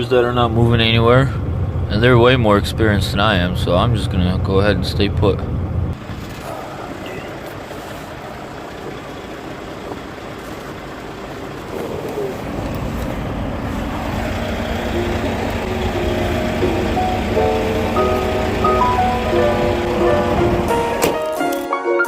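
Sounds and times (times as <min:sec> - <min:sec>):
motor vehicle noise: 0:00.0 - 0:21.5
background music: 0:15.0 - 0:22.0.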